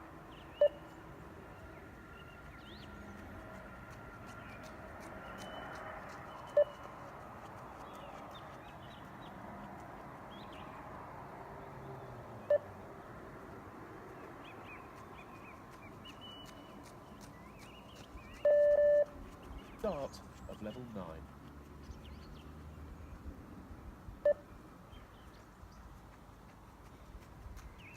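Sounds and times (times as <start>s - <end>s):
short electronic beeps: 6.5s - 6.8s, 18.4s - 19.1s.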